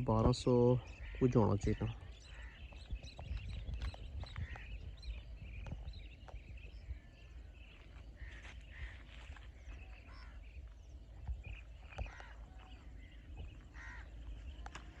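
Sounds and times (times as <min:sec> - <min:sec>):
birds chirping: 0:00.0 - 0:15.0
steady low rumble: 0:01.9 - 0:15.0.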